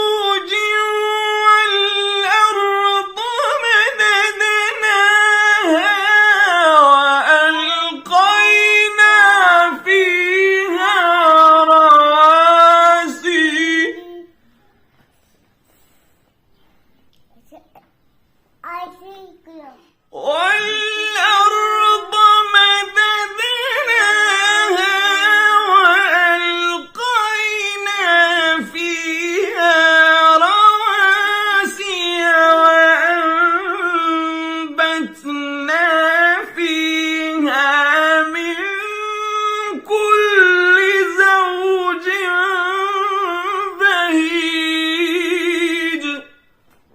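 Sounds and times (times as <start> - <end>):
child reciting melodically: 0.9 - 9.8, 17.3 - 17.9, 18.6 - 23.1, 24.0 - 28.6.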